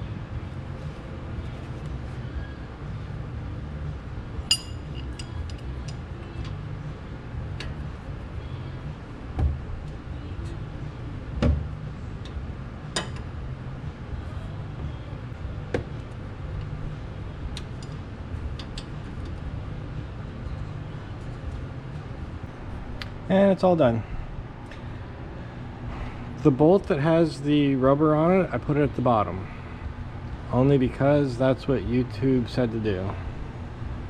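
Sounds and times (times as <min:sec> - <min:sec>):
steady low hum: 0:00.0 - 0:34.0
metallic clinks of tools: 0:04.5 - 0:06.0.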